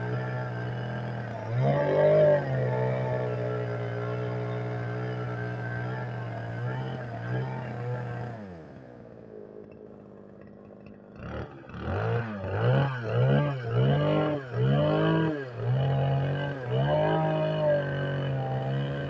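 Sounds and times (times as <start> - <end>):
small petrol engine revving: 0.0 - 9.3, 11.2 - 19.0.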